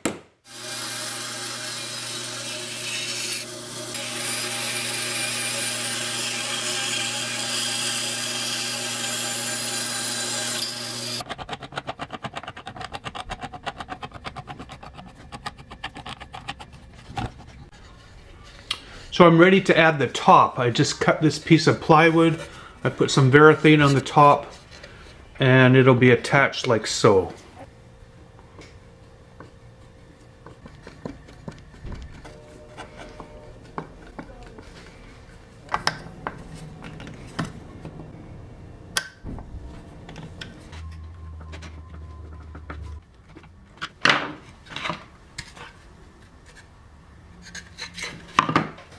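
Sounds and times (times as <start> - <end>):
power tool working wood: 0.5 - 11.2.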